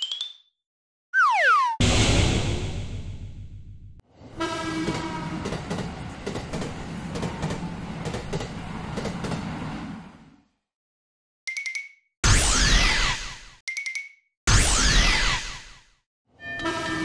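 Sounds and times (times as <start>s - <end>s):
train horn tone: 4.3s - 5.6s, 16.4s - 17.0s
train wheels clacking over rail joints: 4.8s - 9.7s.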